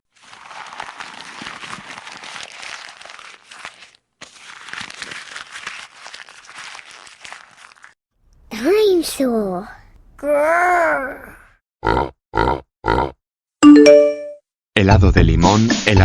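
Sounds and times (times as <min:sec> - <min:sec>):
paper crumpling: 0:00.1 - 0:08.0.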